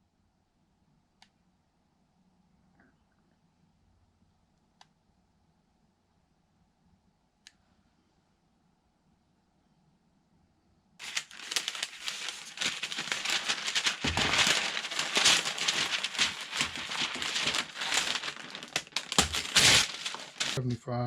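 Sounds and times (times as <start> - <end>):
stiff material crinkling: 11.0 - 20.6.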